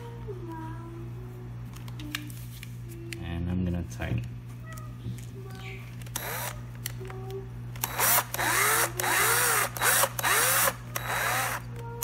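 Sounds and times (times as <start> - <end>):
power drill driving screw into plastic: 6.2 - 6.5, 7.8 - 11.6.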